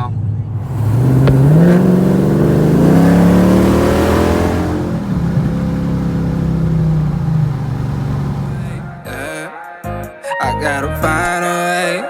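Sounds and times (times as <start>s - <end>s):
car engine accelerating: 0.5s - 9.3s.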